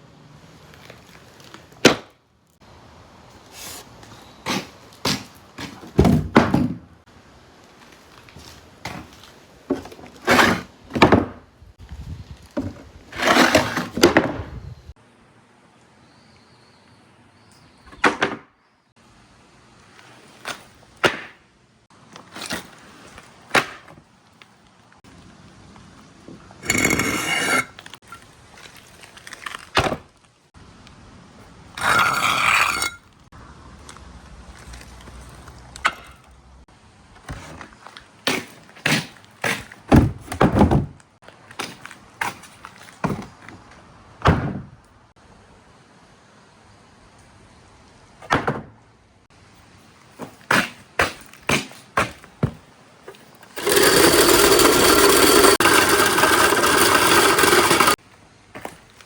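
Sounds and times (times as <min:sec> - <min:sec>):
marbles clattering down a marble run: 0:53.5 - 0:58.0.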